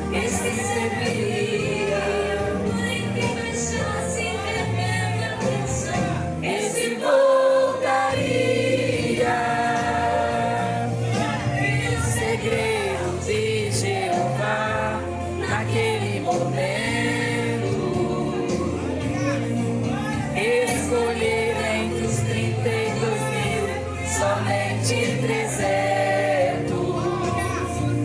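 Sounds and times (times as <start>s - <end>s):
band with bass line: 0.0s - 6.7s, 7.8s - 28.0s
choir singing gospel song: 0.0s - 28.0s.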